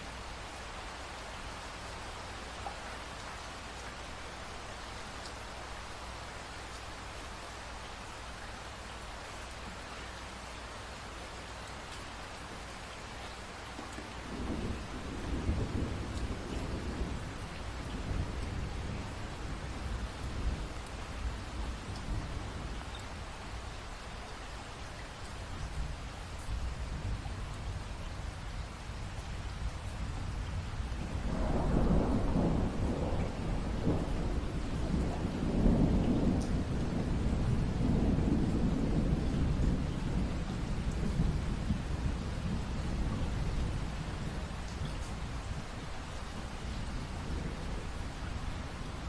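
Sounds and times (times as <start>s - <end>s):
steady rainfall: 0.0s - 49.0s
rain hissing: 30.5s - 49.0s
thunder rumbling: 31.1s - 45.7s.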